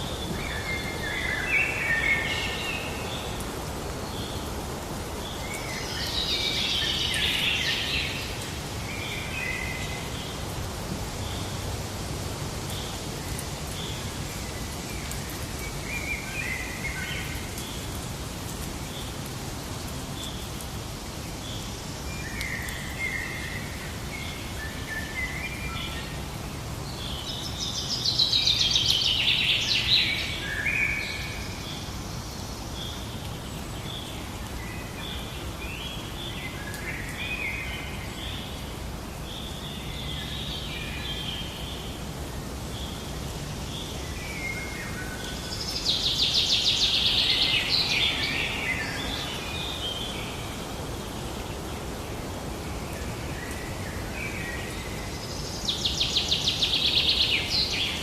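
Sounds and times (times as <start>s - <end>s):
outdoor background noise: 0.0s - 58.0s
birds calling and singing: 43.7s - 58.0s.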